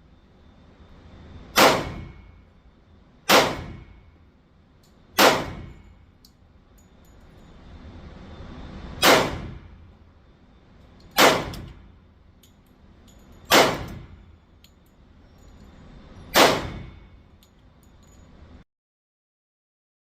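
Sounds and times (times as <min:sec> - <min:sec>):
pistol shots: 0:01.5 - 0:02.2, 0:03.3 - 0:03.9, 0:05.2 - 0:05.8, 0:09.0 - 0:09.6, 0:11.2 - 0:11.8, 0:13.5 - 0:14.2, 0:16.3 - 0:17.0.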